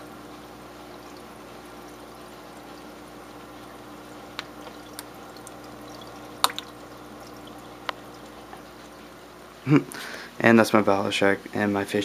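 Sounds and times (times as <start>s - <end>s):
water trickling into tank: 0.0s - 11.6s
low steady hum: 0.0s - 12.0s
fish clicking: 4.3s - 8.1s.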